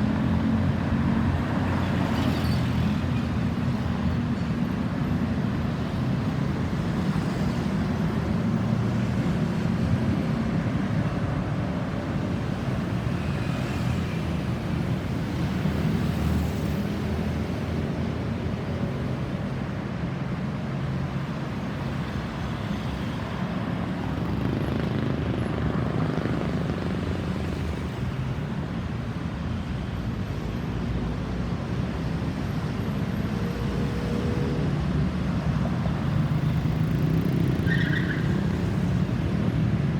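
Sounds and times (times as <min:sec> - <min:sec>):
road traffic rumble: 0:00.0 - 0:39.9.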